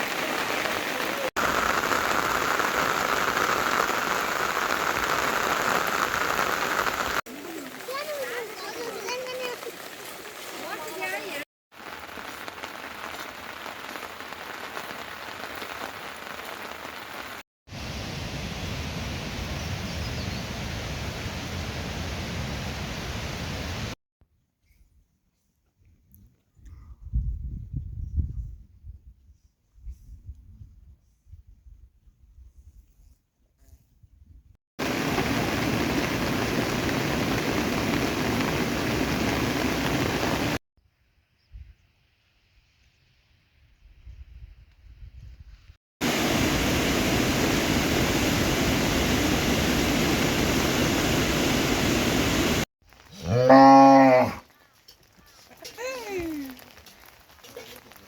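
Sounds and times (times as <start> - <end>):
steady rain falling: 0.0 - 19.8, 34.8 - 40.6, 46.0 - 54.4, 55.6 - 58.0
water rushing: 0.0 - 24.0, 34.8 - 40.6, 46.0 - 52.7.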